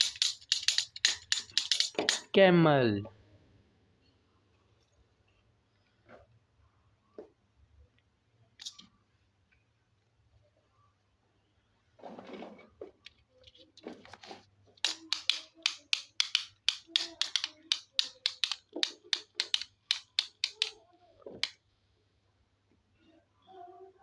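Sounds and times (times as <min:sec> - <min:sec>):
plastic toys clicking and tapping: 0:00.0 - 0:02.4, 0:14.8 - 0:21.6.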